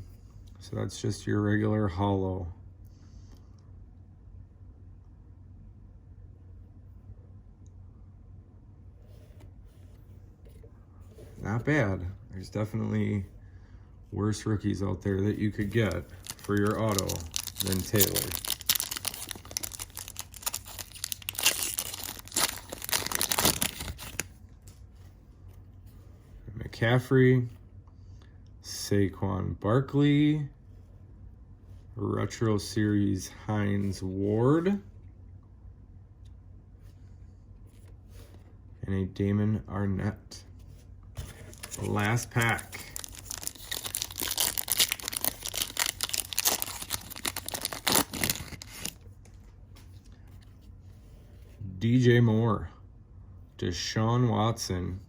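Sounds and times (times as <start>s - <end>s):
faint wrapper handling: 15.2s - 24.8s, 41.2s - 50.7s
wrapper tearing and crinkling: 15.5s - 24.3s, 41.2s - 49.0s.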